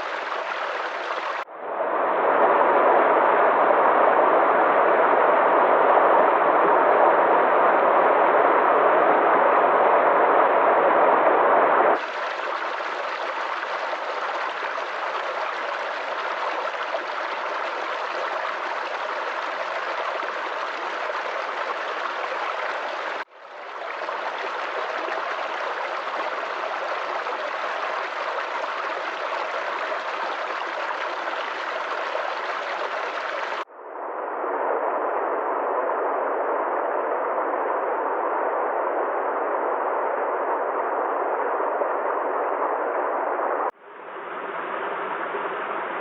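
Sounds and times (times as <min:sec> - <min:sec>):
river water flowing: 0:00.0 - 0:01.4, 0:12.0 - 0:33.6.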